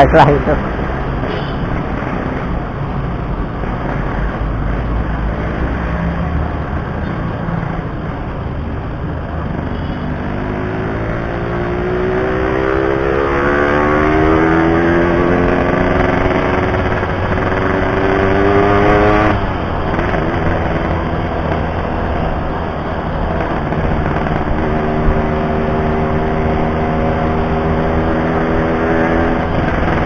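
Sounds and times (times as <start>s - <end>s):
road and wind noise: 0.0s - 30.0s
two-stroke motorcycle engine: 9.2s - 22.3s.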